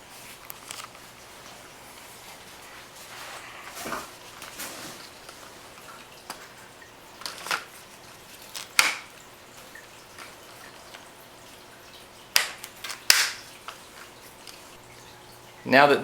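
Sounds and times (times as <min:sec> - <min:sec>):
plastic parts snapping into place: 0:12.4 - 0:13.4.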